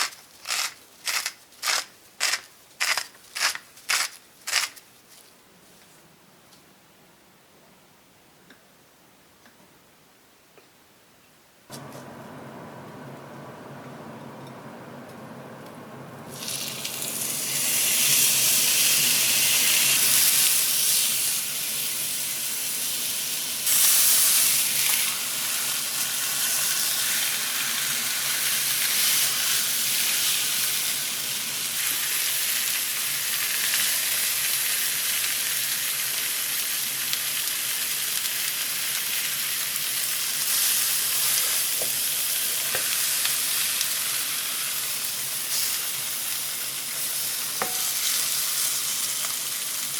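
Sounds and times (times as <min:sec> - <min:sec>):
beef sizzling in a hot pan: 0:16.3 - 0:49.9.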